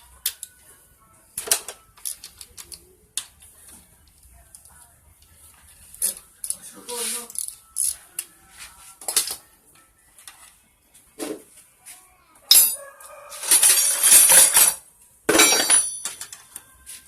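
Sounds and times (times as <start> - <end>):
metal tools clinking and clattering: 12.5 - 16.5.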